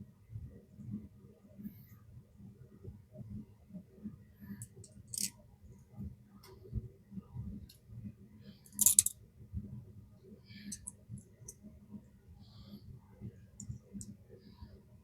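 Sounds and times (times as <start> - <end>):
small metal parts clicking: 4.6 - 5.3, 8.7 - 9.1, 10.7 - 10.9
metal parts clattering: 5.1 - 5.3, 8.7 - 9.1, 10.7 - 10.9.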